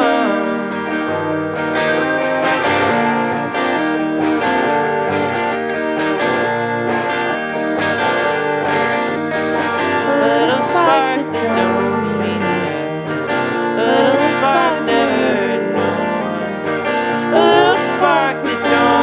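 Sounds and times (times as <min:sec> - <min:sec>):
electric guitar chords: 0:00.0 - 0:19.0
indie rock music: 0:00.0 - 0:19.0
bass guitar: 0:00.9 - 0:10.9.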